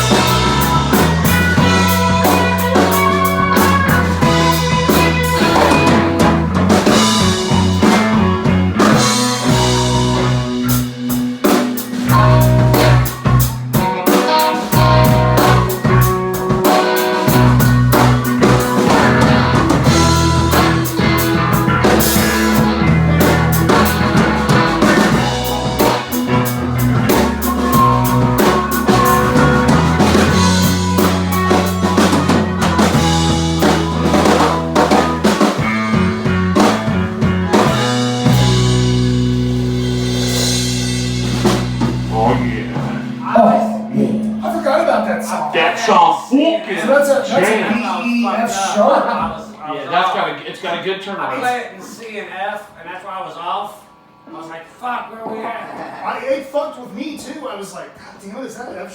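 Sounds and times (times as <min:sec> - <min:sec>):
bass line: 0:00.0 - 0:14.0, 0:14.6 - 0:46.2
drum kit with rimshots: 0:00.0 - 0:46.2
electric guitar: 0:00.0 - 0:46.2.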